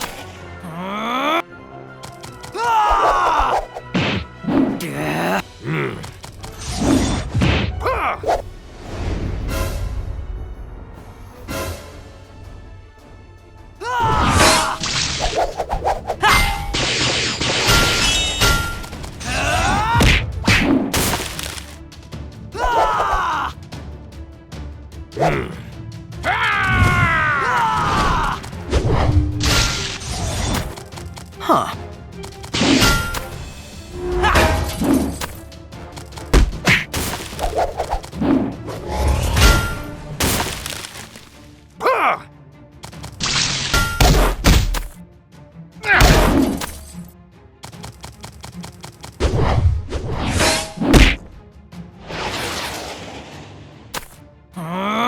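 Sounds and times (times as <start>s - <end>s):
background music: 0.0s - 55.0s
thuds and whacks: 2.0s - 4.8s, 6.0s - 7.8s, 20.0s - 21.8s, 34.4s - 38.5s, 40.2s - 41.4s, 42.8s - 45.0s, 50.8s - 51.3s, 53.9s - 54.2s
shattering crashes: 39.3s - 41.4s
whooshes: 52.0s - 54.0s.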